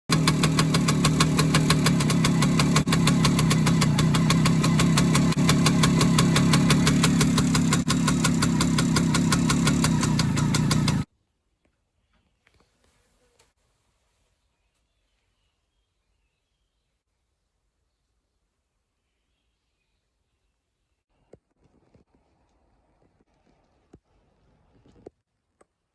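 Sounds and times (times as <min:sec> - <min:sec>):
two-stroke engine idling: 0:00.1 - 0:11.1.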